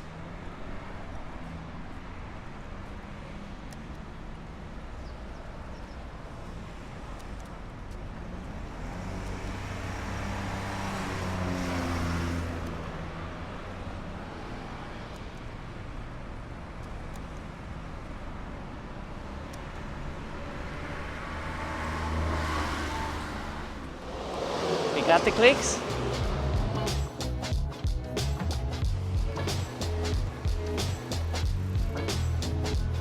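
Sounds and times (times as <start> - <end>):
street traffic: 0.0 - 33.0
vehicle engine passing: 8.7 - 14.2, 19.6 - 27.5.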